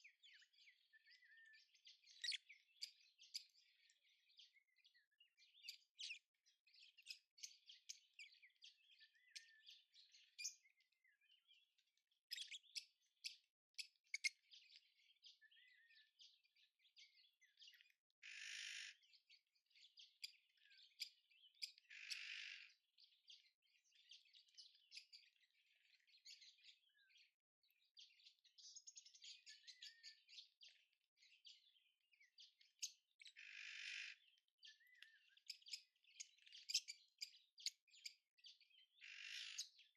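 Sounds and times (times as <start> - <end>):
small birds chirping: 0.0 - 39.9
harsh rasping calls: 21.9 - 22.7, 33.4 - 34.2.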